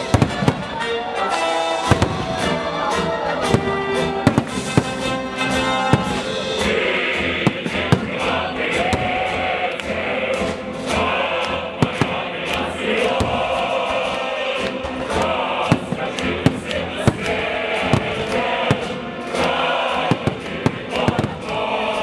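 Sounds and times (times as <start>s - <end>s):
firework bangs: 0.0s - 0.8s, 1.6s - 9.4s, 11.8s - 12.3s, 13.0s - 13.7s, 15.6s - 21.6s
choral music: 0.0s - 22.0s.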